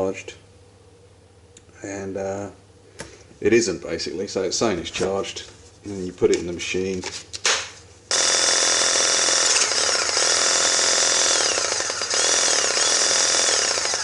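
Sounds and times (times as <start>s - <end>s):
pressing tool motor whining: 8.1s - 14.0s.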